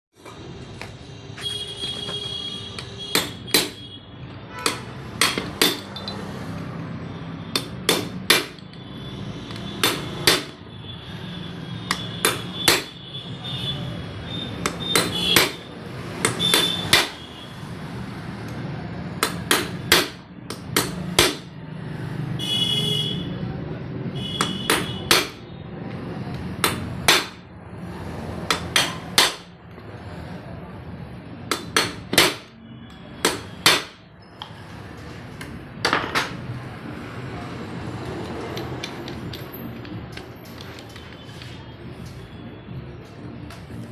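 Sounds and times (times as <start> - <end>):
hammer striking metal: 3.0 - 3.8, 4.6 - 6.2, 7.5 - 8.8, 9.5 - 10.6, 11.9 - 13.0, 14.6 - 17.3, 19.2 - 21.5, 24.4 - 25.4, 26.6 - 27.5, 28.5 - 29.6, 31.5 - 34.1.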